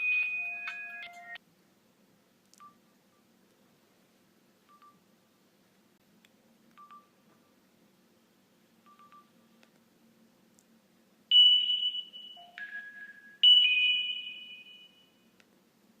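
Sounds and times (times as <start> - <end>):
electronic ringtone melody: 0.0 - 1.4, 11.3 - 15.2
phone keypad beeps: 0.0 - 1.4, 4.7 - 5.0, 6.8 - 7.1, 8.9 - 9.3.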